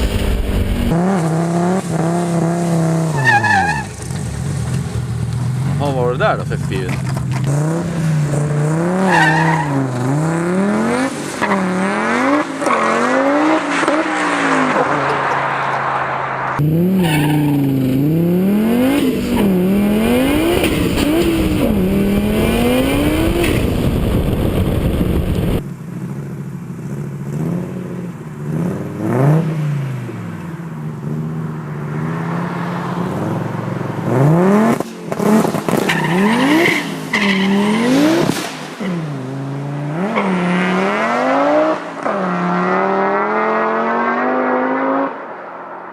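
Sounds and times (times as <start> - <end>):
race car engines revving: 0.0 - 45.4.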